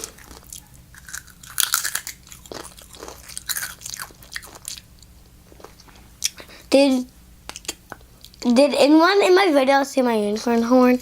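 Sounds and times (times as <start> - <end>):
chips being crunched: 0.0 - 4.8.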